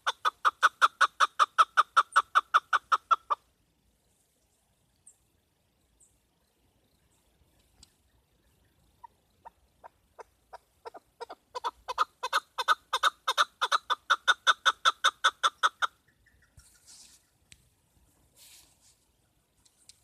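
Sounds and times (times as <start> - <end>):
partridge clucking calls: 0.0 - 3.5, 7.5 - 17.6
brief hiss: 18.3 - 19.0.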